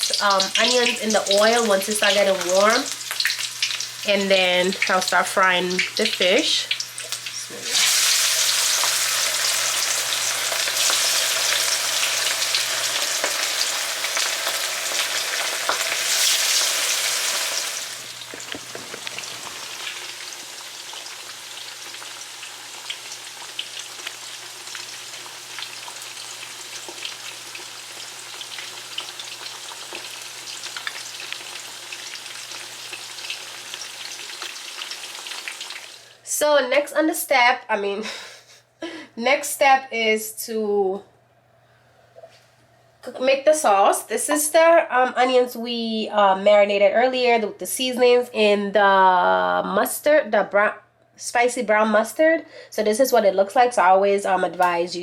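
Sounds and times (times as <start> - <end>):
food sizzling in hot oil: 0.0 - 36.2
oil crackling: 6.9 - 22.2.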